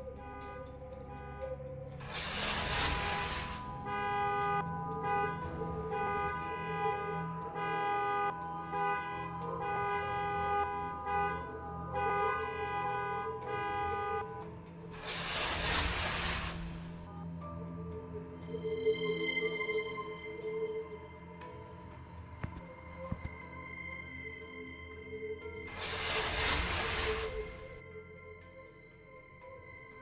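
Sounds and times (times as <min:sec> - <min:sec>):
horn honking: 0:02.0 - 0:14.4, 0:15.0 - 0:17.0.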